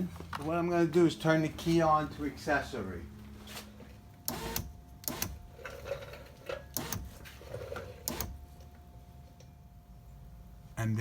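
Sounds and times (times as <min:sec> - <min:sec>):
sharp clicks: 0:04.3 - 0:05.4
power window motor: 0:04.3 - 0:05.8, 0:06.7 - 0:08.4.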